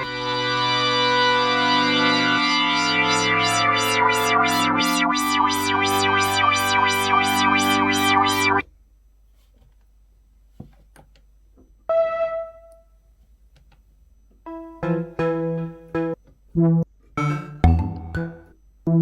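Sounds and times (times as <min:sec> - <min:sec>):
synthesizer notes: 0:00.0 - 0:08.6, 0:14.5 - 0:19.0.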